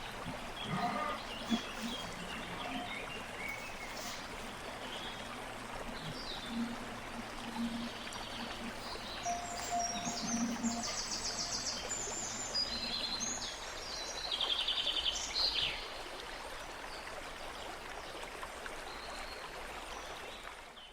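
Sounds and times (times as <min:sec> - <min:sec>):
birds singing in rapid trills: 0:00.0 - 0:15.4.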